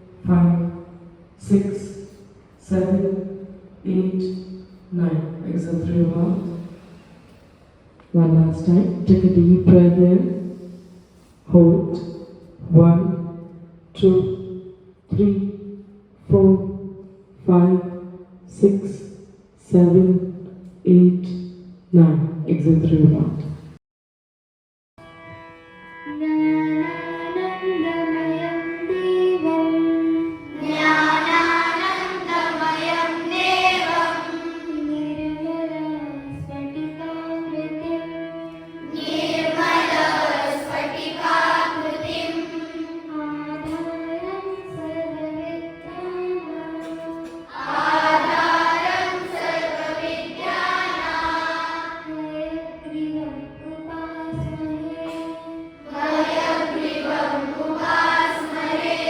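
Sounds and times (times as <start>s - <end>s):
sustained instrumental drone: 25.0s - 59.0s
children singing in unison: 26.7s - 37.9s, 38.7s - 52.7s, 53.9s - 59.0s.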